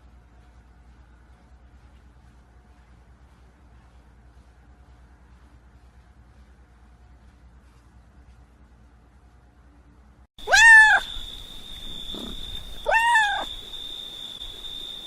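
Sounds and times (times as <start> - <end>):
cat meowing: 10.4 - 13.6.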